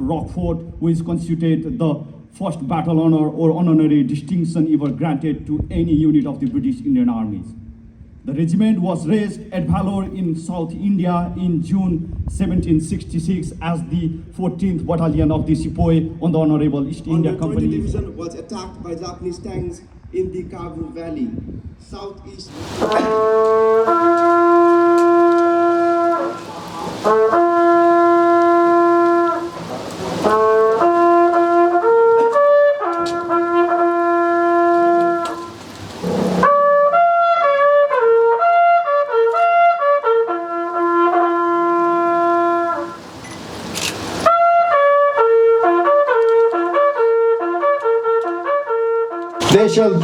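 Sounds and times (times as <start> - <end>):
bugle playing slow call: 22.5 - 50.0.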